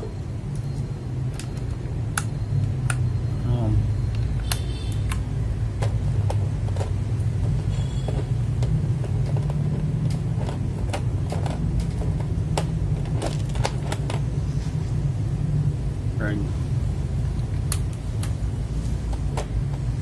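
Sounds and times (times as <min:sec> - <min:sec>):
keyboard parts clicking: 0:04.1 - 0:14.2.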